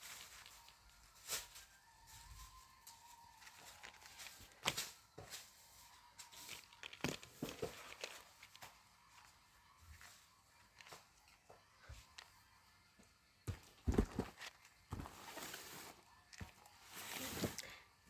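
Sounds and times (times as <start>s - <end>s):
plastic packaging crinkling: 3.0s - 4.8s, 6.2s - 8.6s.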